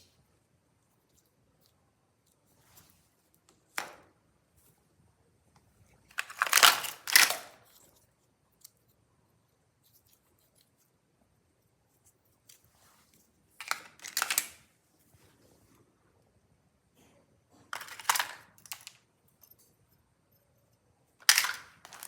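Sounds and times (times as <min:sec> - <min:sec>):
hard plastic crunching and scraping: 0:06.1 - 0:08.0, 0:13.6 - 0:14.6, 0:17.7 - 0:19.0, 0:21.2 - 0:22.0.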